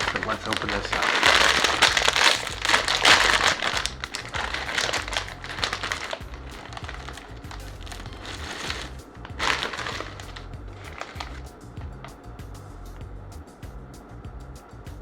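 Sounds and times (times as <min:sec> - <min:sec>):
plastic snack bag crinkling: 0:00.0 - 0:11.5
background music with steady beat: 0:00.0 - 0:15.0.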